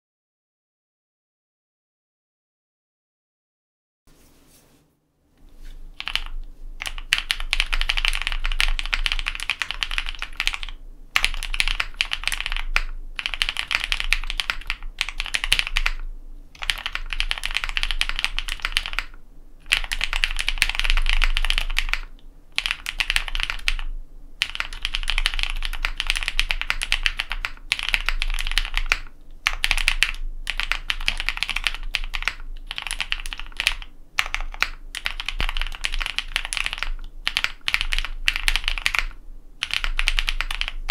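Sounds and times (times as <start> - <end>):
typing on mechanical keyboard: 6.0 - 16.0, 16.6 - 40.9.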